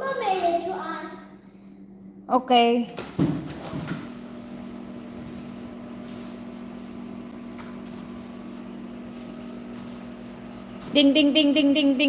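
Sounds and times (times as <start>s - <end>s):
household appliance humming: 3.1s - 12.0s.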